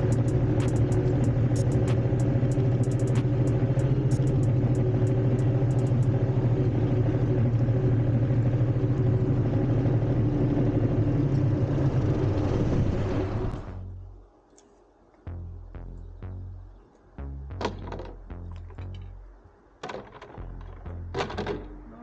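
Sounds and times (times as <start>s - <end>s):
motor running with low hum: 0.0s - 14.2s.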